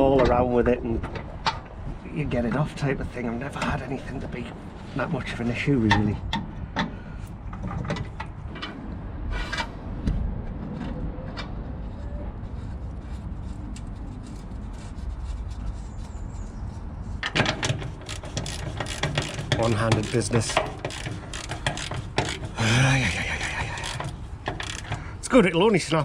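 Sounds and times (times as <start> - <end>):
spanner clinking on metal fittings: 17.2 - 22.6, 23.3 - 25.0.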